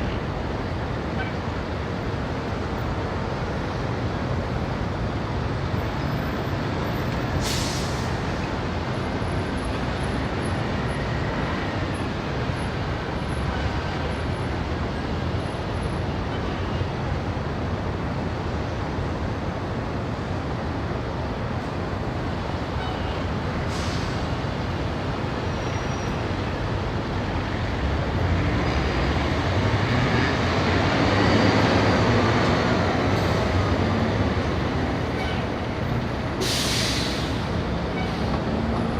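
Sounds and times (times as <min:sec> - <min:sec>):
city street traffic: 0:00.0 - 0:38.9
short hisses: 0:36.4 - 0:37.4.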